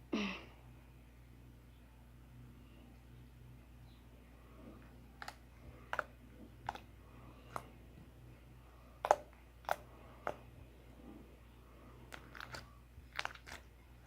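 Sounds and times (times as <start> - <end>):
slime clicking and popping: 9.0 - 10.4.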